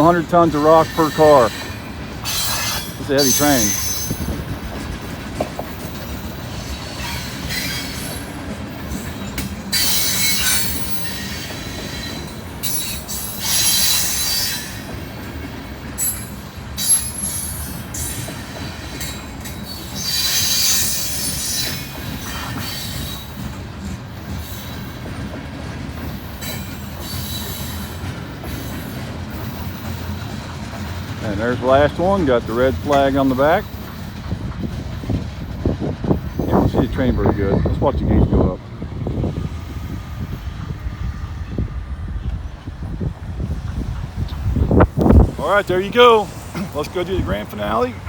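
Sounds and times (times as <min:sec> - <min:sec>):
freight train wheels rumbling: 0:00.0 - 0:48.0
high-pitched wheel squeal: 0:02.3 - 0:04.4.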